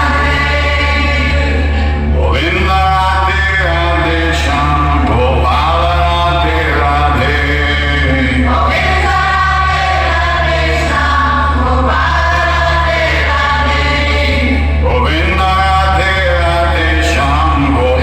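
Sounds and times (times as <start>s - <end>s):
deep bass: 0.0s - 18.0s
song over loudspeakers: 0.0s - 18.0s.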